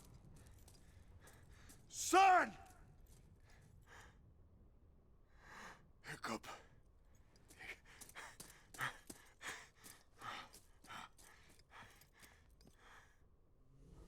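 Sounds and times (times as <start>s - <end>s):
man breathing raggedly: 7.4s - 13.3s.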